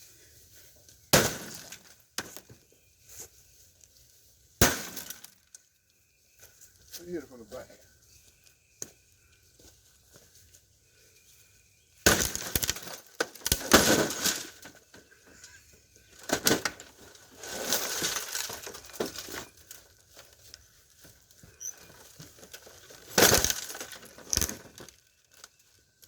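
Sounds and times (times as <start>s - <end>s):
glass breaking and crunching: 1.1s - 2.4s, 4.6s - 5.6s, 12.0s - 14.7s, 17.5s - 19.5s, 22.8s - 25.4s.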